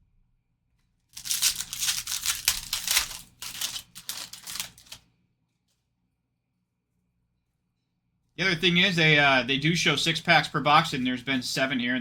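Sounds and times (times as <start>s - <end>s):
foil wrapper crinkling and tearing: 1.1s - 5.0s.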